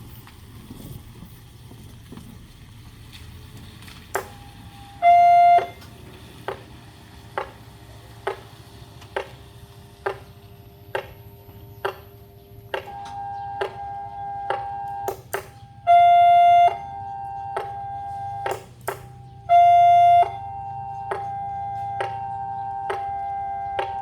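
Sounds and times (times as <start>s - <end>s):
steady alarm tone: 4.2s - 5.9s, 10.0s - 24.0s.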